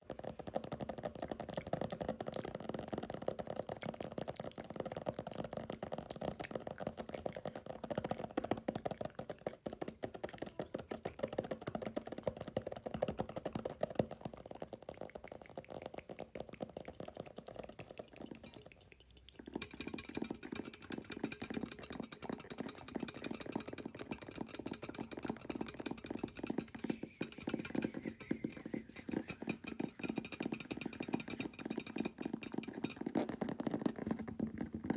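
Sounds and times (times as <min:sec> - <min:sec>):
fast fingernail tapping: 0:00.1 - 0:34.9
mouth sounds: 0:26.1 - 0:33.0.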